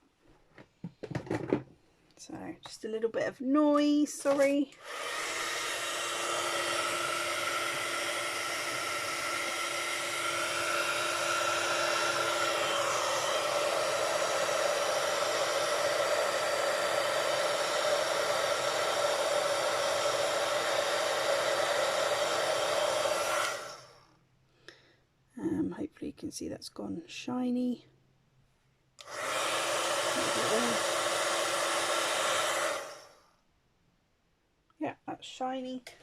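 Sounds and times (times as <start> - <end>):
heat tool blowing air: 4.2 - 24.0, 29.0 - 33.2.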